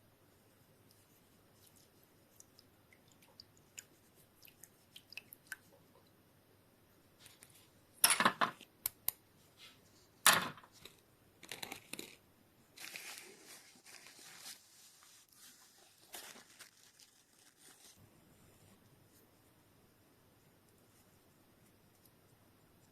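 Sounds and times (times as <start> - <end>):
rustling and crumpling: 12.8 - 18.0.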